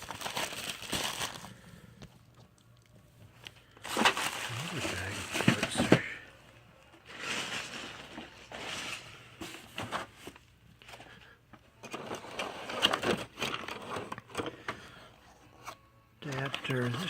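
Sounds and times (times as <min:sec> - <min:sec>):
plastic bags crinkling: 0:00.0 - 0:02.0, 0:03.4 - 0:06.3, 0:07.0 - 0:09.3.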